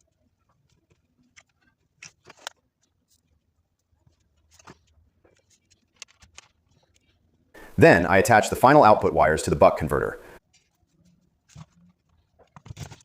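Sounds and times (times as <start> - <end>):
clicks and taps of small parts: 0.9 - 2.6, 4.5 - 7.1.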